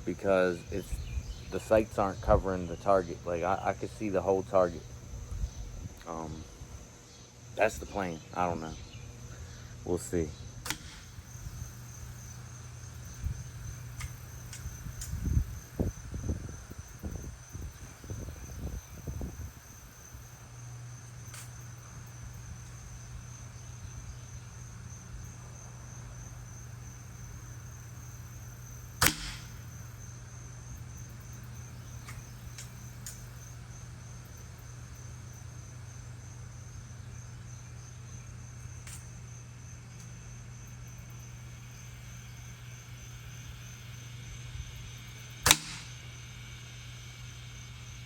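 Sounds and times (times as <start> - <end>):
high-pitched insect trill: 0.0 - 48.0
low steady hum: 0.0 - 48.0
air rifle shot crack: 10.6 - 11.4, 29.0 - 29.8, 45.4 - 46.1
pellet striking target: 29.0 - 29.6, 45.4 - 46.0.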